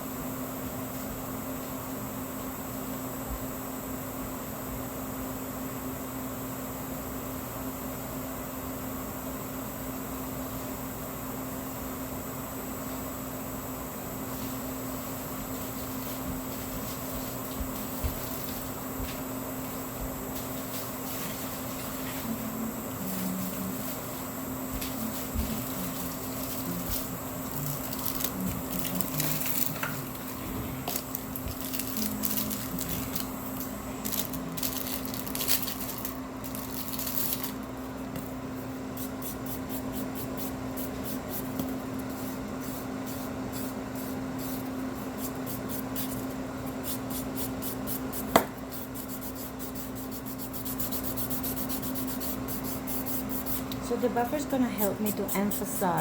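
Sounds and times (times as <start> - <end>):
steady low hum: 0.0 - 56.0
nail buffer rubbing: 39.0 - 53.8, 54.8 - 56.0.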